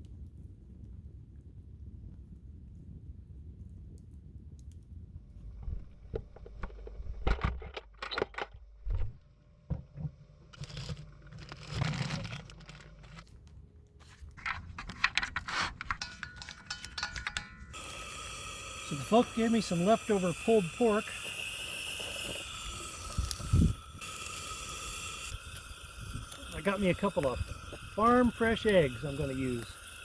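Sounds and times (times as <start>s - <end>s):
packaging rustling: 10.6s - 15.5s
cooking gear clattering: 14.4s - 30.0s.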